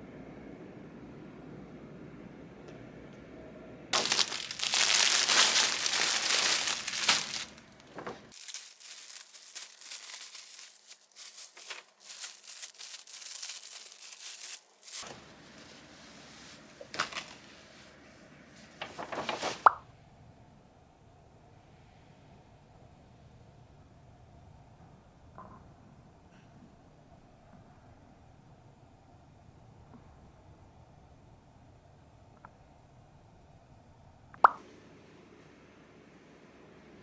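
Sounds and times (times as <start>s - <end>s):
packaging crinkling and rustling: 4.0s - 15.0s, 17.0s - 17.4s, 18.8s - 19.6s.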